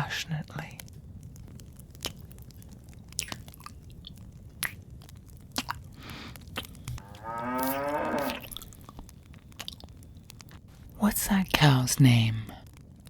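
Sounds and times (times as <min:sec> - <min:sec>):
small clicks and crackles: 0:00.3 - 0:13.0
cow mooing: 0:07.0 - 0:08.6.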